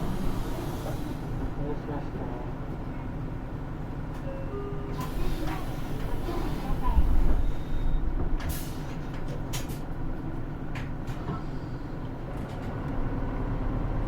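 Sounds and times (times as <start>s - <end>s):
air brake hisses: 0.0s - 1.4s, 5.0s - 7.7s, 8.4s - 9.0s
bus engine low rumble: 0.0s - 14.0s.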